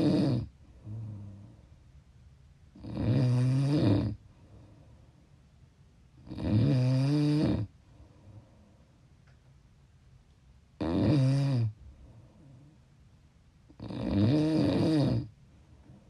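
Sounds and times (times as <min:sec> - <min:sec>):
person snoring: 0:00.0 - 0:01.5, 0:02.8 - 0:04.2, 0:06.2 - 0:07.7, 0:10.8 - 0:11.8, 0:13.8 - 0:15.3.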